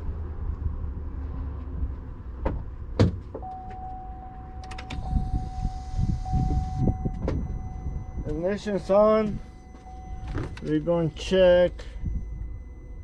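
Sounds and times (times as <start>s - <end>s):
car ignition clicks: 3.3s - 12.7s
steady electrical tone: 3.5s - 13.0s.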